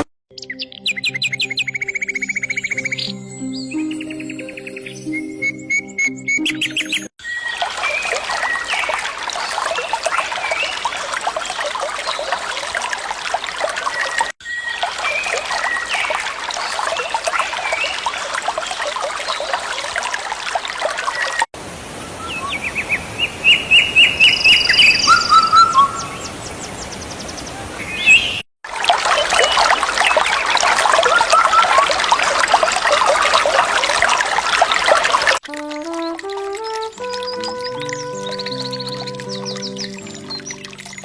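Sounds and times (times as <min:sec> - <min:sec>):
birds calling: 0:00.4 - 0:07.6, 0:22.2 - 0:28.4, 0:35.9 - 0:41.0
trickle of running water: 0:28.7 - 0:41.0.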